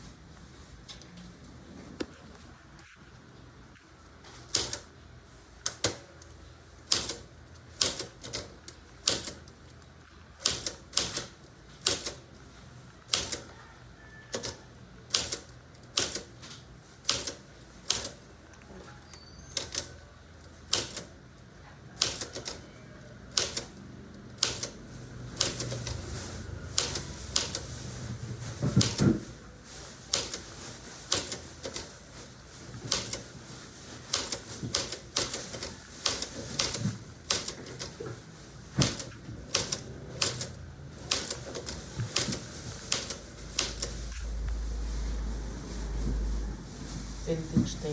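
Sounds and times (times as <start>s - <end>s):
typewriter keys clacking: 6.8s - 9.6s, 13.1s - 13.5s, 14.3s - 16.4s, 19.5s - 20.0s, 20.7s - 21.1s, 22.0s - 22.6s, 23.3s - 27.7s, 28.7s - 29.2s, 30.1s - 30.5s, 31.1s - 32.0s, 32.8s - 33.2s, 34.0s - 37.9s, 38.8s - 44.2s
low noise: 39.0s - 47.9s.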